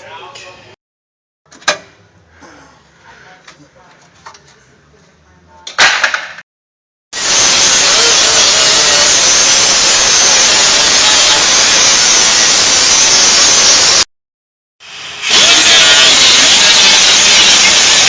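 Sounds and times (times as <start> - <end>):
power tool grinding sheet steel: 7.2 - 14.1, 14.8 - 18.0.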